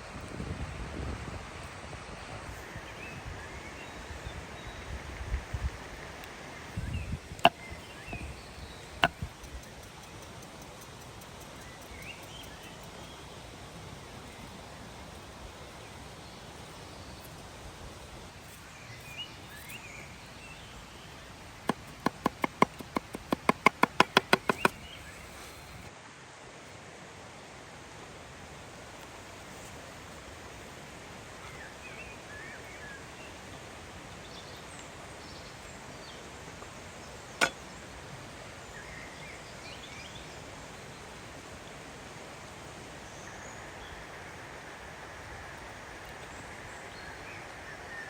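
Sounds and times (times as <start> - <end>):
sharp knocks: 21.7 - 24.8.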